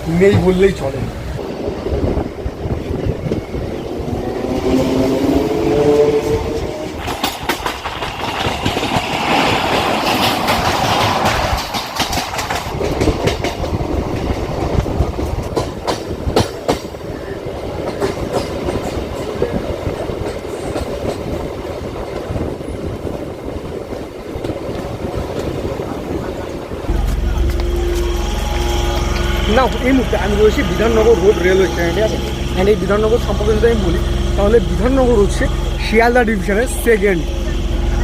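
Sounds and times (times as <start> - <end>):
electric train rumbling: 0.0 - 38.0
wheels clacking over rail joints: 6.2 - 17.2.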